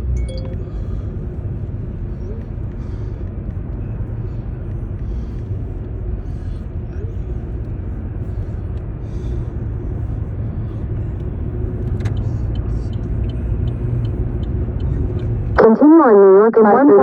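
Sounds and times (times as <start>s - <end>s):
car road rumble inside cabin: 0.0s - 17.0s
faint ticks: 11.2s - 15.3s.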